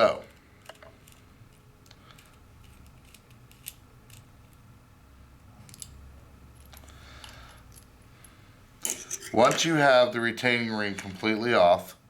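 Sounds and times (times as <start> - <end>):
metallic clicks and scrapes: 0.2 - 4.6, 8.8 - 9.7.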